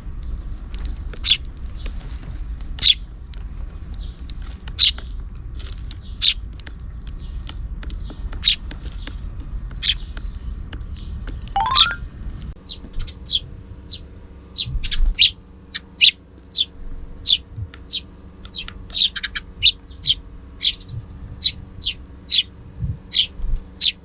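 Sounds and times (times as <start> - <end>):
sparrows chirping: 13.9 - 24.0.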